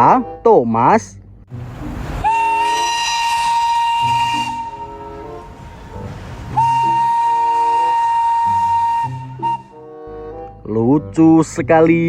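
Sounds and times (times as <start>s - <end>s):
steam train whistle blasts: 2.1s - 9.9s.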